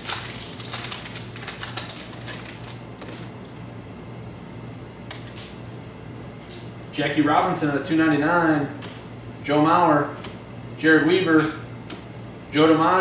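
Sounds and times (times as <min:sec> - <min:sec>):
wrapper torn and crinkled: 0:00.0 - 0:03.3
steady low hum: 0:00.0 - 0:13.0.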